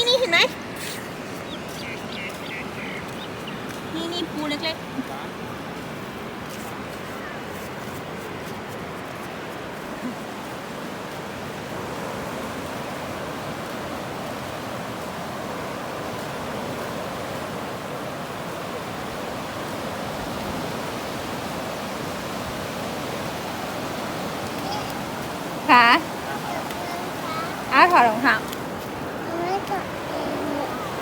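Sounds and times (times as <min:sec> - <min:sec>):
surf washing onto beach: 0:00.0 - 0:31.0.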